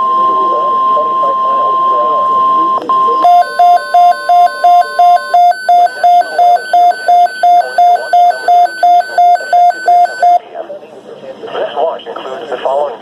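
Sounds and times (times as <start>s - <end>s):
rapid electronic beeping: 0.0s - 10.4s
steady weather alert tone: 0.0s - 10.4s.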